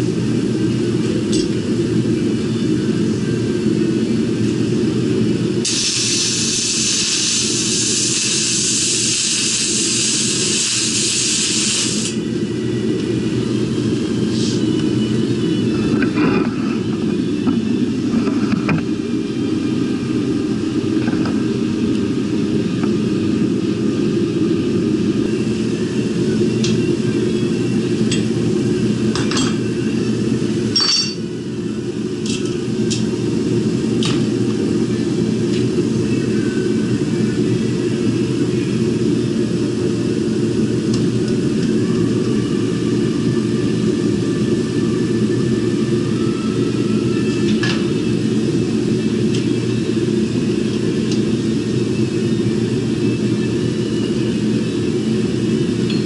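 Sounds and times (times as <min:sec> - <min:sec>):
loud even hiss: 0:05.6 - 0:12.2
low machine rumble: 0:12.0 - 0:56.0.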